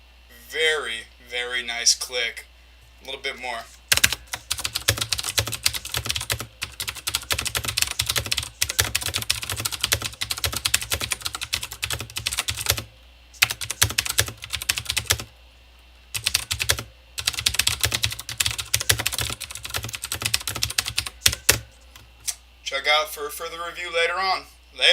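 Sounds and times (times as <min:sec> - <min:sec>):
mechanical keyboard typing: 0:03.9 - 0:15.3, 0:16.2 - 0:21.7.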